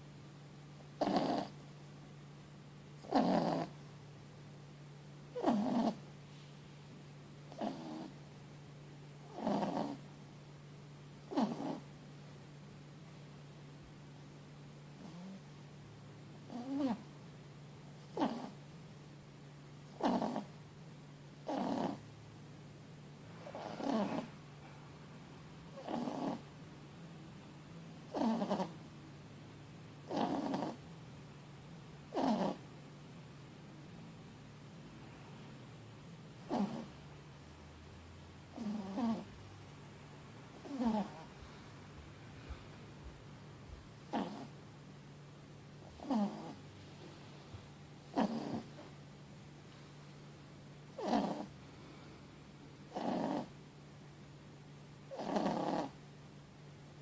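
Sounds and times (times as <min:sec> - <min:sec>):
puppy snoring loudly: 0:01.0 - 0:01.7, 0:03.0 - 0:03.8, 0:05.3 - 0:06.1, 0:07.5 - 0:08.3, 0:09.2 - 0:10.1, 0:11.2 - 0:11.9, 0:14.9 - 0:15.6, 0:16.4 - 0:17.1, 0:18.0 - 0:18.7, 0:19.8 - 0:20.6, 0:21.4 - 0:22.1, 0:23.3 - 0:24.7, 0:25.7 - 0:26.5, 0:28.0 - 0:28.8, 0:30.0 - 0:30.9, 0:32.1 - 0:32.7, 0:36.3 - 0:37.1, 0:38.4 - 0:39.5, 0:40.5 - 0:41.6, 0:44.0 - 0:44.6, 0:45.8 - 0:47.3, 0:48.0 - 0:49.0, 0:50.9 - 0:52.1, 0:52.8 - 0:53.6, 0:55.0 - 0:56.0.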